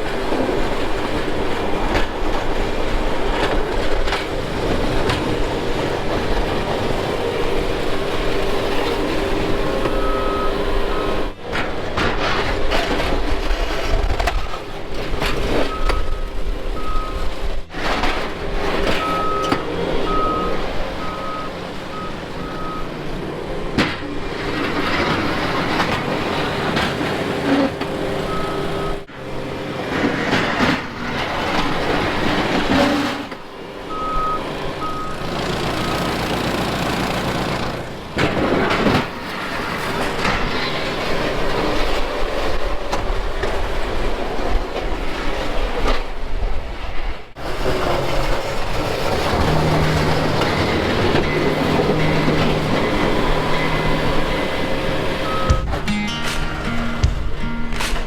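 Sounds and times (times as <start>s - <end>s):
heavy equipment running: 0.0s - 46.0s, 47.3s - 58.0s
backup alarm beeping: 9.6s - 11.4s, 15.5s - 17.4s, 18.9s - 23.0s, 28.2s - 29.1s, 33.9s - 36.1s, 49.2s - 57.6s.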